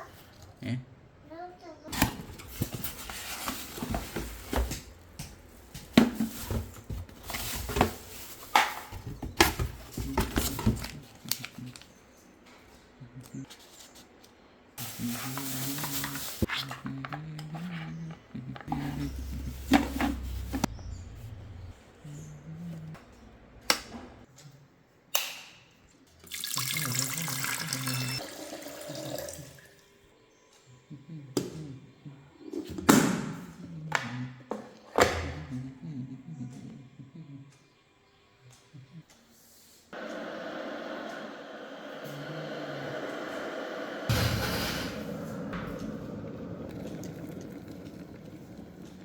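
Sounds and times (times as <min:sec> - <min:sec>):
water running from tap: 0:26.2 - 0:29.7, 0:45.6 - 0:49.0.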